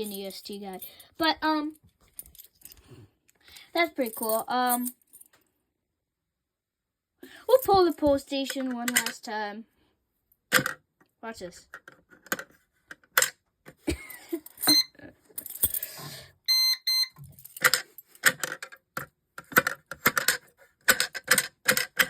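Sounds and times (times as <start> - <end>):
keys jangling: 0.0 - 1.1, 2.1 - 2.8, 3.9 - 5.3, 14.3 - 16.0, 17.2 - 18.2.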